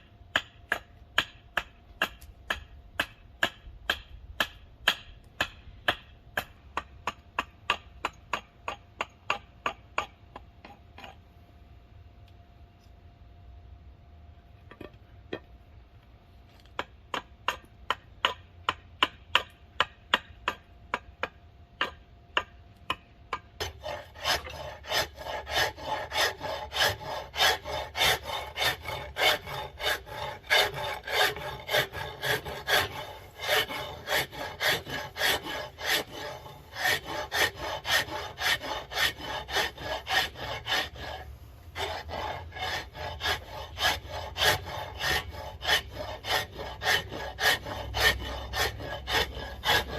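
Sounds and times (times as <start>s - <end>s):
hand tool strokes on wood: 23.6s - 49.9s.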